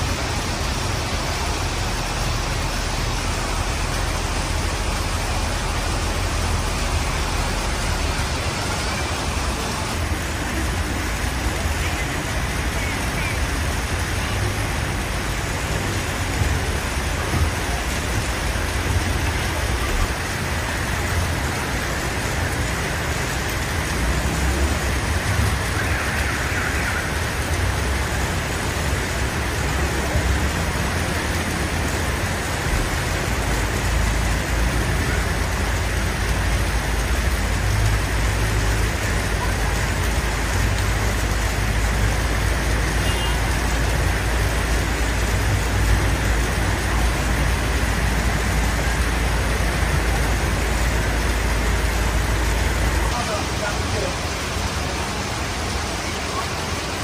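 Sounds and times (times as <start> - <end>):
low traffic rumble: 0.0 - 57.0
vehicle engines: 0.0 - 57.0.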